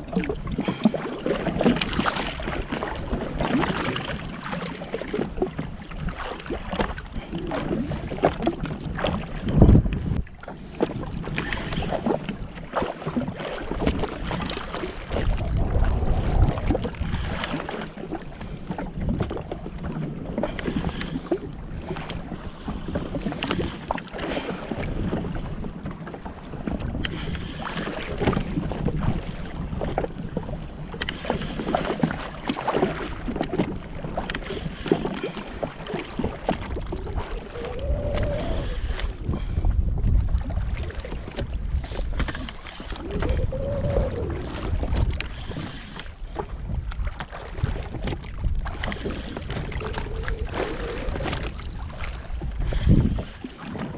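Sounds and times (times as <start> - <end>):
water splashing and sloshing: 0.0 - 53.9
wind buffeting microphone: 0.0 - 53.9.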